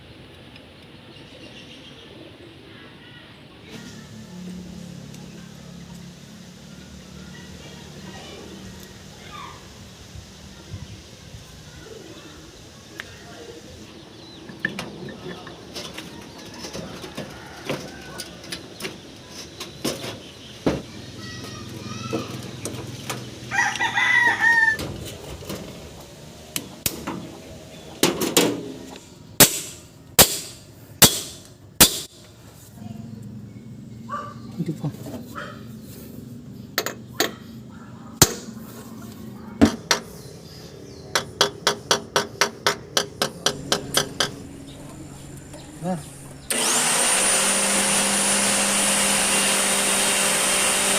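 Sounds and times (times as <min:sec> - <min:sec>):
hammer striking metal: 0:29.4 - 0:32.2.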